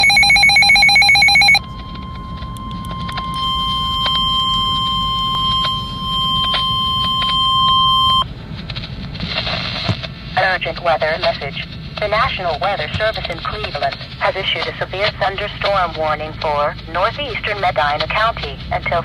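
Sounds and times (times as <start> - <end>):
warbling digital header tones: 0.0 - 8.2
steady warning alarm tone: 0.0 - 8.3
static clicks: 0.0 - 19.0.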